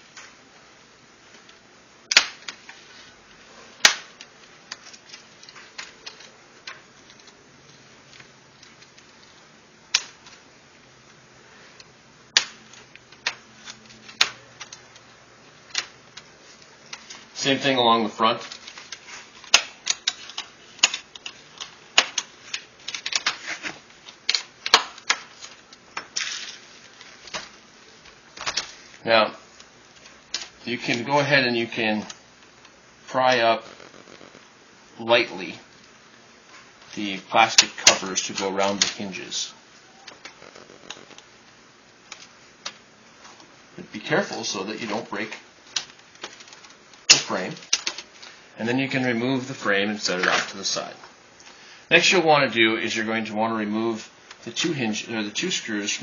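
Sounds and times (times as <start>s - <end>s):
plastic clips cracking loose: 1.4s - 2.7s, 9.9s - 10.4s, 11.8s - 17.2s, 18.4s - 27.6s, 45.7s - 48.3s.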